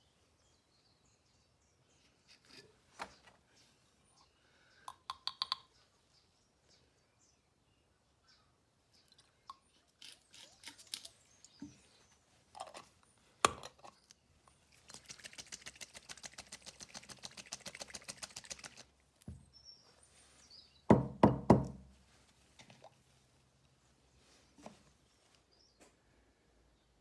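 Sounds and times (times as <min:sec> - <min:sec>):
objects being handled: 0:02.0 - 0:03.4, 0:09.7 - 0:19.5.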